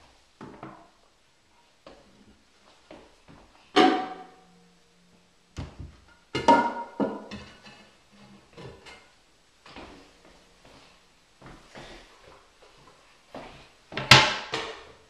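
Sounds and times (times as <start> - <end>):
toilet tank lid knocking and scraping: 6.4 - 7.8.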